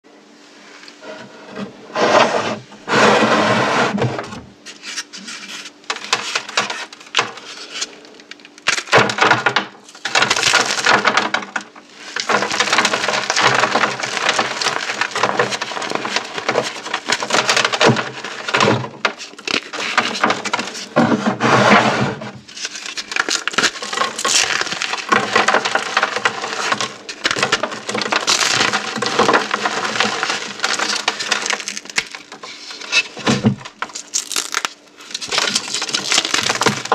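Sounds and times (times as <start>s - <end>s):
gel balls and chalk crunching: 11.9s - 36.9s.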